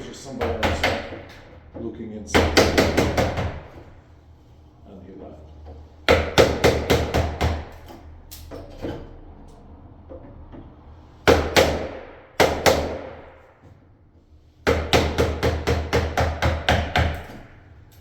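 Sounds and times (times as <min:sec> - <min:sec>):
hammer striking chisel: 0:00.4 - 0:01.5, 0:02.3 - 0:03.8, 0:06.1 - 0:08.0, 0:11.2 - 0:13.3, 0:14.6 - 0:17.6.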